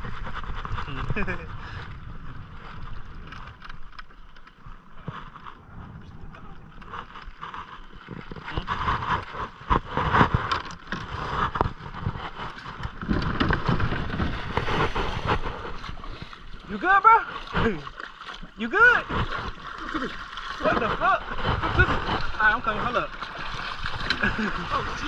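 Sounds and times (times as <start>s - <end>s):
wind on the microphone: 0.0s - 3.7s, 5.0s - 25.0s
knocks and thumps: 19.0s - 24.4s.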